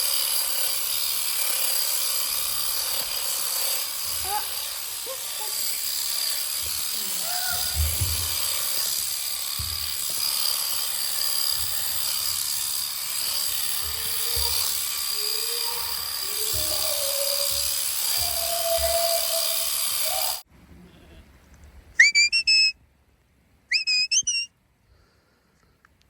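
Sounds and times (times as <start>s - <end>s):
electric shears whining: 0.0s - 20.5s.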